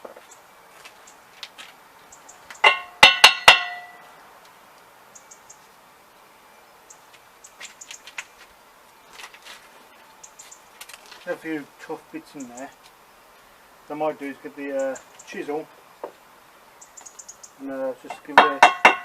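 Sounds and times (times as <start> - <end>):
metal tool clanging on iron wheel: 2.6 - 4.0, 18.1 - 19.0.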